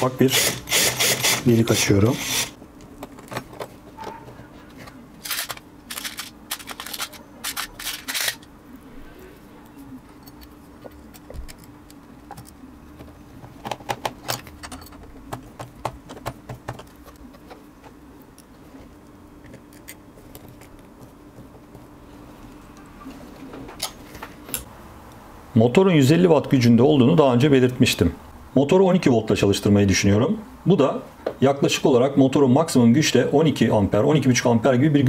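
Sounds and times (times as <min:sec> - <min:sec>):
faint steady hum: 0:00.0 - 0:35.0
hand tools clicking and tapping: 0:10.2 - 0:18.5.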